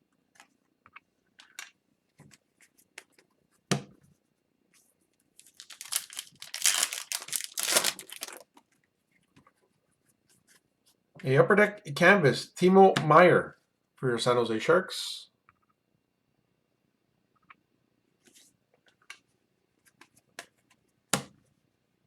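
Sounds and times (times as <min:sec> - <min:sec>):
foil wrapper crinkling and tearing: 0:05.4 - 0:08.6.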